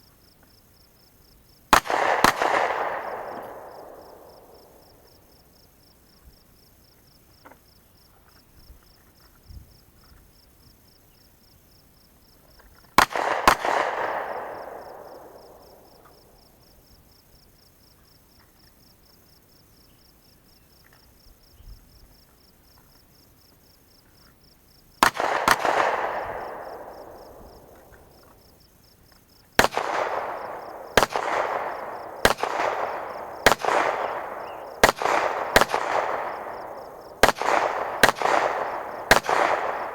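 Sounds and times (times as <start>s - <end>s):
gunshots with echoes: 1.7s - 5.2s, 13.0s - 16.4s, 25.0s - 28.4s, 29.6s - 39.9s.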